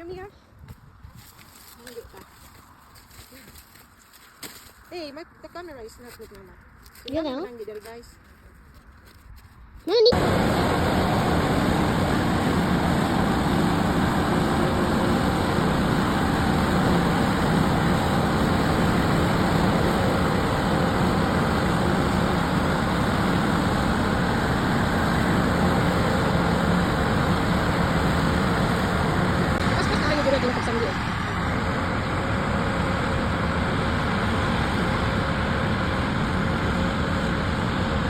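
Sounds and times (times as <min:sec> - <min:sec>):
vehicle engine running: 0:10.0 - 0:38.0.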